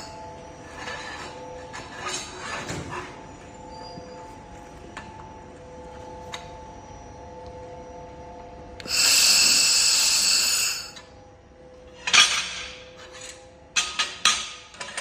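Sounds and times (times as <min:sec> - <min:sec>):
laser welding hiss: 0:08.8 - 0:11.0
welder hum: 0:08.8 - 0:11.2.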